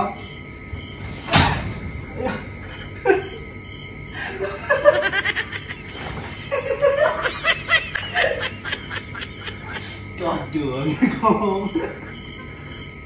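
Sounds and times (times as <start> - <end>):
person giggling: 2.1 - 3.5, 4.2 - 10.1.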